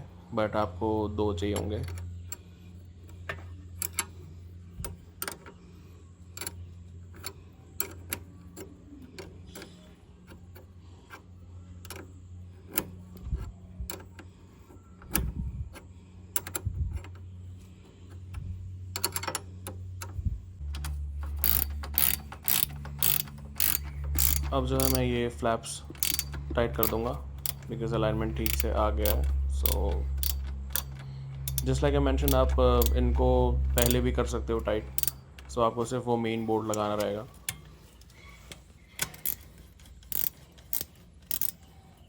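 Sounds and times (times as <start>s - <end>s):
low hum: 0.0s - 42.0s
spanners clicking on metal bolts: 18.0s - 35.7s, 36.4s - 42.0s.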